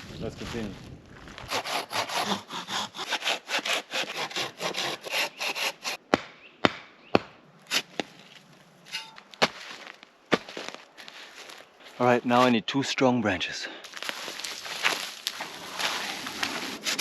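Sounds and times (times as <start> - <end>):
hand saw cutting wood: 1.5 - 6.0, 15.7 - 17.0.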